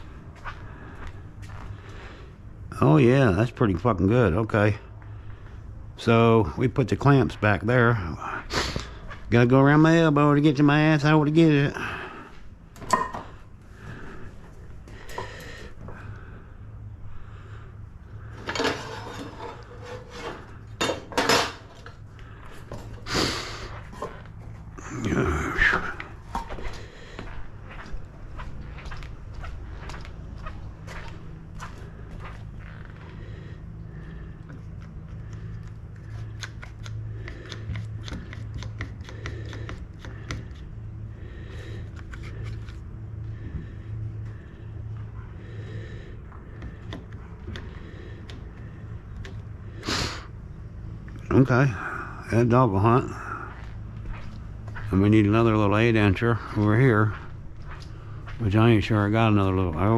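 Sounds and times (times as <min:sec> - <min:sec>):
steady low hum: 0:00.0 - 0:59.9
wood and clamp scraping: 0:18.4 - 0:21.9.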